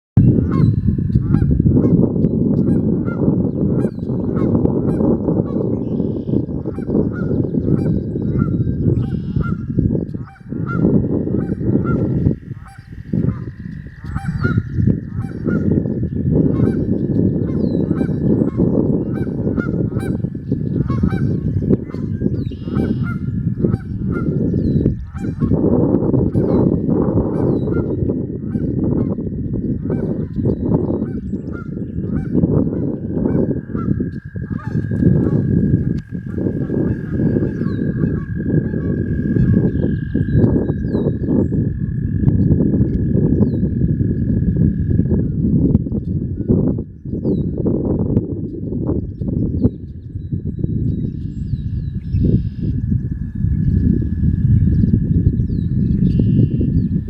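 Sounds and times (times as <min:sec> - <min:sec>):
geese honking: 0:00.3 - 0:41.0.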